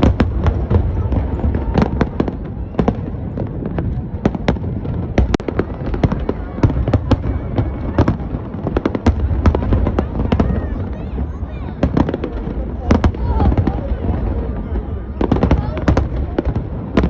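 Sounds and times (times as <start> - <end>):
fireworks bangs and cracks: 0.0 - 17.0.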